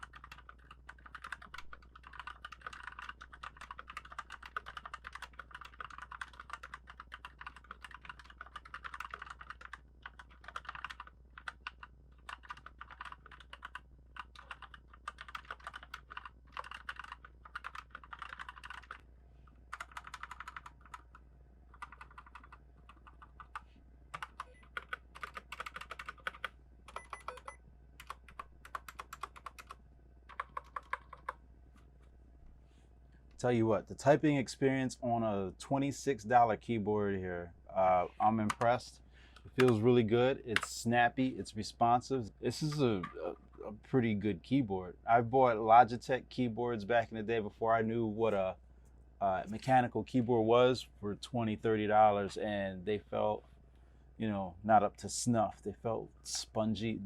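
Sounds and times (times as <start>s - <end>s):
mechanical keyboard typing: 0.0s - 19.0s, 19.7s - 31.4s.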